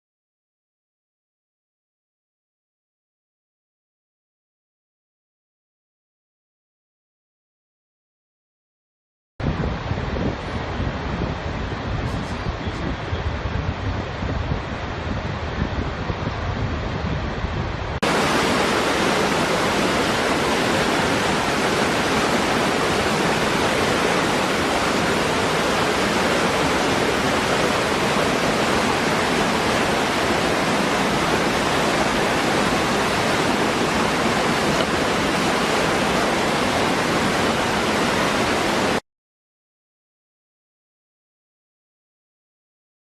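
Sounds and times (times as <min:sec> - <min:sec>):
waterfall rushing: 0:18.0 - 0:39.0.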